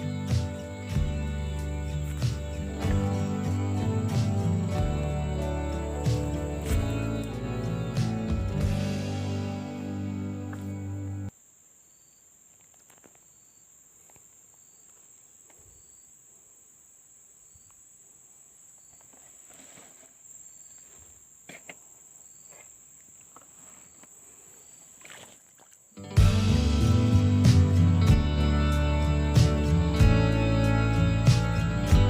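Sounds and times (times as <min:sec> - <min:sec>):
background music: 0:00.0 - 0:11.3, 0:26.0 - 0:32.0
high-pitched insect drone: 0:00.0 - 0:12.2.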